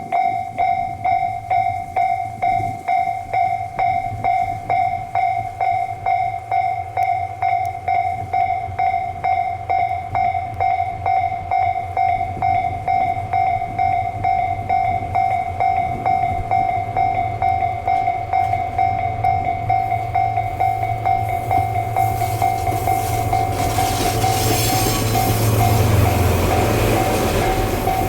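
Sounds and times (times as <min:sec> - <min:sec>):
level crossing bell ringing: 0:00.1 - 0:28.0
locomotive engine rumble: 0:16.0 - 0:28.0.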